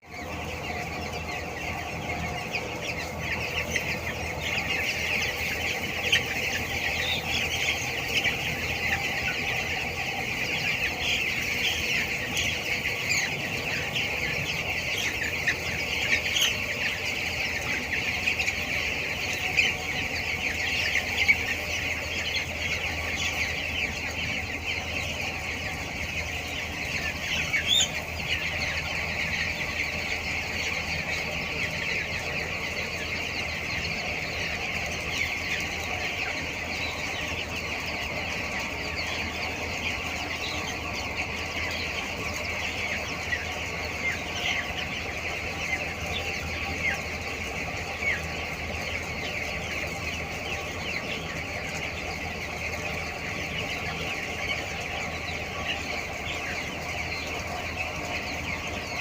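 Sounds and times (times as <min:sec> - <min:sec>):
chicks peeping: 0:00.0 - 0:59.0.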